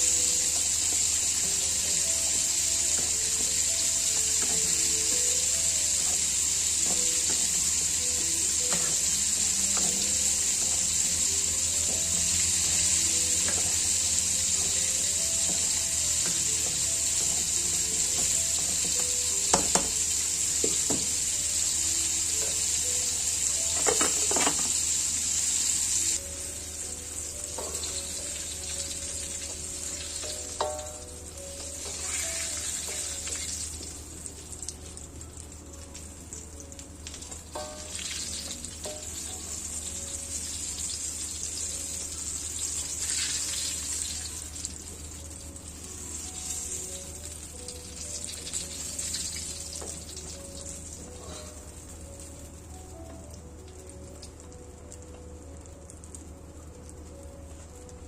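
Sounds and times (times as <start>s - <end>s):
food sizzling in oil: 0.0s - 58.0s
utensil knocking on pan: 18.1s - 20.0s.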